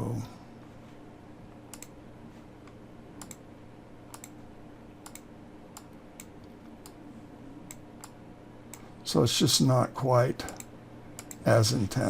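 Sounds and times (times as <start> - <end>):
faint computer hum: 0.0 - 12.0
computer mouse button clicks: 5.0 - 7.0.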